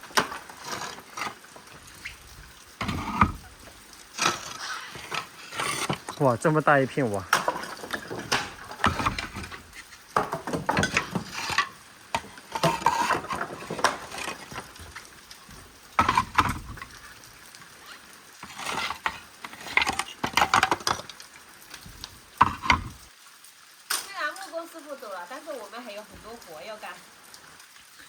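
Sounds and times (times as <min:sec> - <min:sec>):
clay roof tiles clinking: 0:00.0 - 0:17.3, 0:18.4 - 0:23.1.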